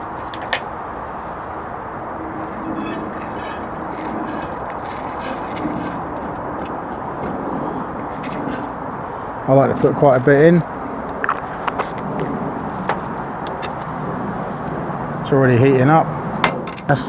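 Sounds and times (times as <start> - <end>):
cookware scraping and clinking: 2.2 - 13.8.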